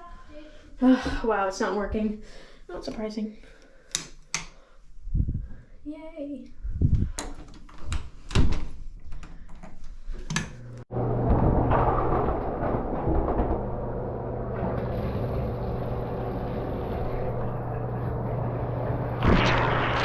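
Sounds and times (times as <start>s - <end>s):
shower spraying water: 14.6s - 20.0s.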